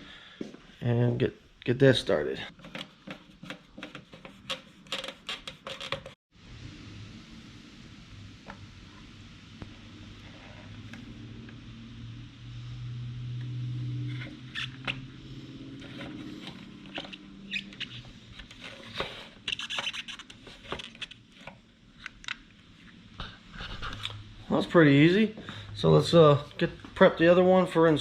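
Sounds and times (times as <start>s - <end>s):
clicks and scrapes of plastic parts: 2.5s - 6.2s, 15.8s - 22.4s.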